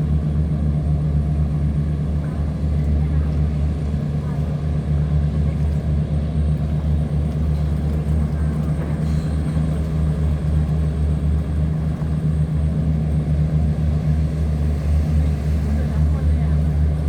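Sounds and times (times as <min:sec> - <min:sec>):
diesel engine droning: 0:00.0 - 0:17.0.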